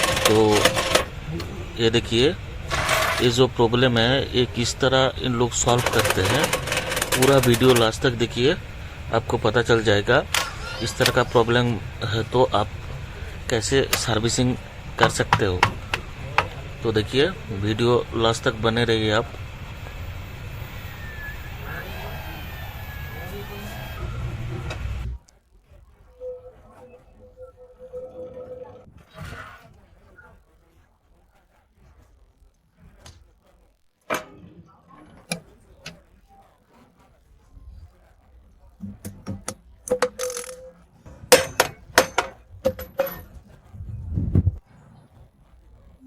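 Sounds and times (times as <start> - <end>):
traffic rumble: 0.0 - 25.2
faint wavering sounds: 15.9 - 28.9
metal tools clinking: 39.9 - 43.4.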